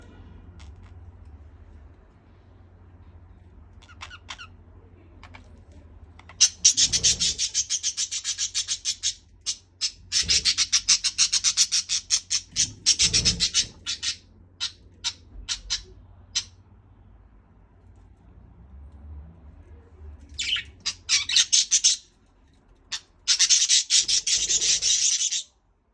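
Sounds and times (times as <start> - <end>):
budgerigars squawking: 6.3 - 16.5, 20.4 - 22.0, 22.9 - 25.5.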